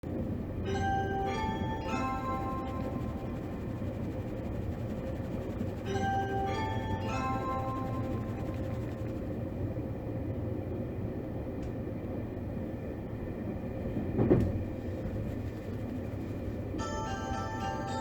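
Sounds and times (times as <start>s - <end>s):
electric train rumbling inside car: 0.0s - 18.0s
onboard chime melody: 0.7s - 4.2s, 5.5s - 9.2s, 16.8s - 18.0s.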